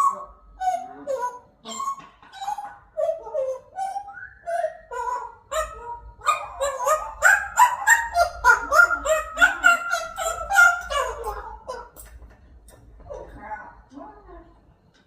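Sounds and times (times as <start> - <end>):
parrot calling: 0.0 - 14.5.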